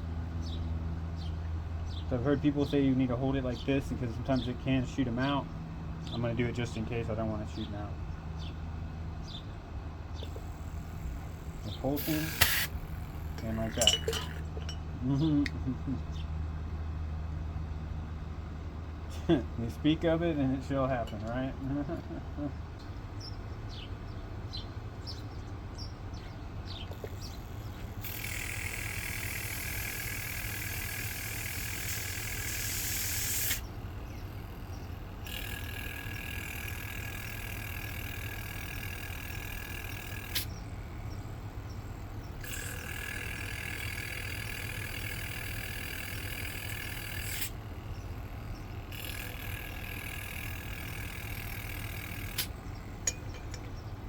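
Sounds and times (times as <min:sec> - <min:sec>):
aerosol spray hissing: 0:12.0 - 0:12.8.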